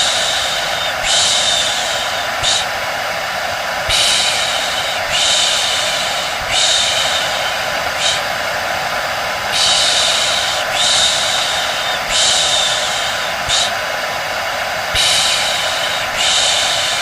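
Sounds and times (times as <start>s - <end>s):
hair dryer running: 0.0s - 17.0s
person shushing: 3.9s - 8.4s, 9.5s - 13.8s.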